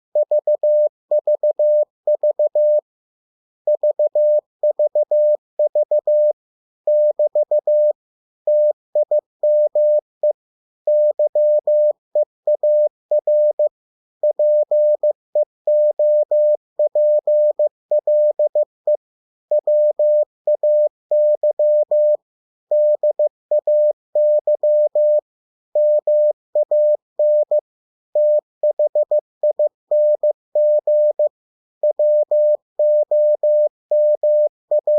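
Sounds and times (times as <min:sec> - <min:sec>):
morse code tone: 0:00.2 - 0:02.8, 0:03.8 - 0:06.3, 0:06.9 - 0:07.9, 0:08.5 - 0:10.0, 0:10.9 - 0:11.9, 0:12.6 - 0:13.7, 0:14.3 - 0:15.1, 0:15.7 - 0:18.6, 0:19.6 - 0:25.2, 0:25.8 - 0:27.6, 0:28.2 - 0:34.9.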